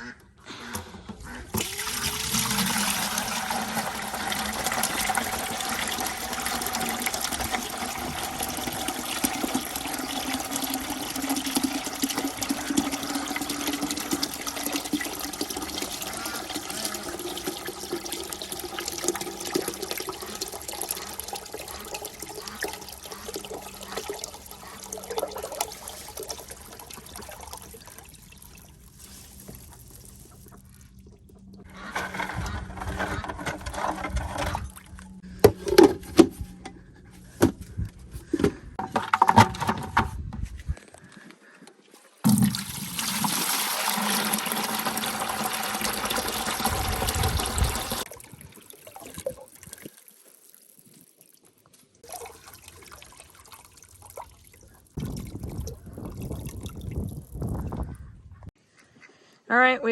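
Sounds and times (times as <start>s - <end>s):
water running into plastic bucket: 0.7s - 36.4s, 42.2s - 57.9s
buckets knocking: 0.8s - 25.8s, 38.2s - 40.2s.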